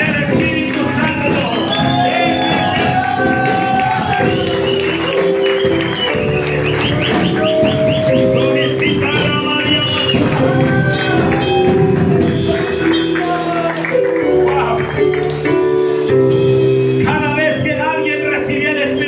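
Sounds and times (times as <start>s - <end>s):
tambourine: 0.0s - 11.7s
church music: 0.0s - 19.0s.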